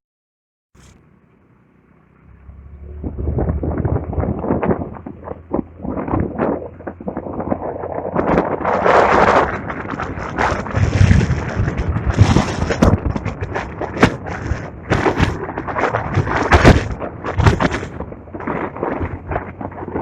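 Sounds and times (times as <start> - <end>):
wind buffeting microphone: 2.3 - 20.0
sharp thumps and pops: 9.3 - 20.0.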